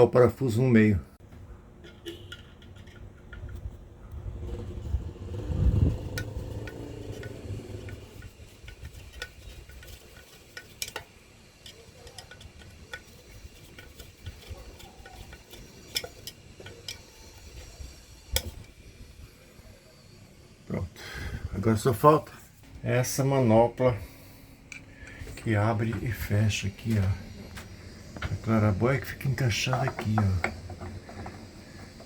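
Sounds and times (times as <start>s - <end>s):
low rumble of handling: 1.2s - 11.0s
clicks and scrapes of hand work: 1.8s - 18.8s, 24.7s - 32.0s.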